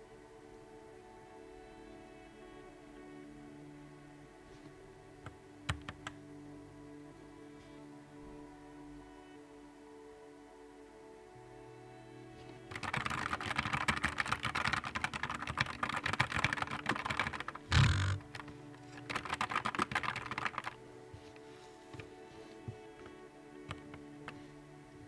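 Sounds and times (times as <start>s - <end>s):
typing on mechanical keyboard: 12.7s - 20.8s.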